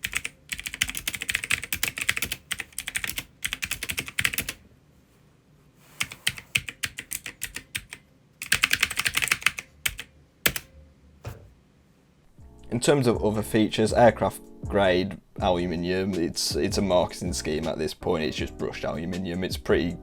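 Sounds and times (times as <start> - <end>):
mechanical keyboard typing clicks: 0.0 - 4.6, 6.0 - 10.7.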